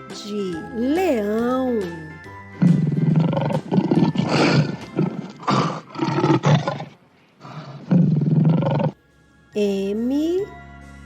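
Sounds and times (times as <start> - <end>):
lion roaring: 2.5 - 9.0.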